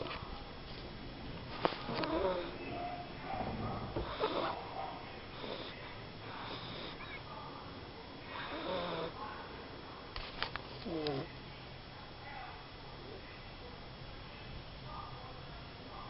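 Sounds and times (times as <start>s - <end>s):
small dog snoring: 1.9s - 2.6s, 4.0s - 4.6s, 5.3s - 5.8s, 6.4s - 7.1s, 8.4s - 9.2s, 10.8s - 11.3s.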